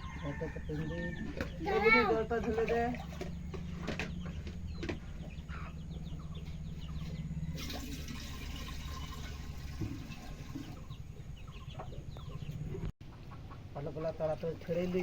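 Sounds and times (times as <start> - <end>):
low steady rumble: 0.0 - 12.9
water pouring and splashing: 7.6 - 10.9.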